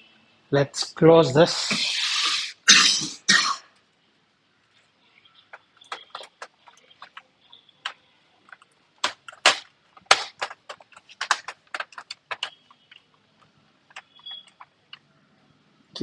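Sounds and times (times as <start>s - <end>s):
plastic laptop case clicking: 7.8s - 13.0s.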